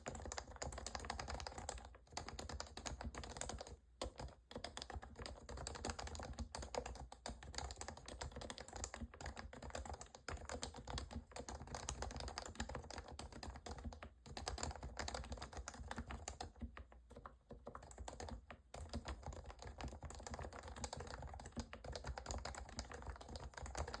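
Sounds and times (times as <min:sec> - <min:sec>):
fast keyboard typing: 0:00.0 - 0:24.0.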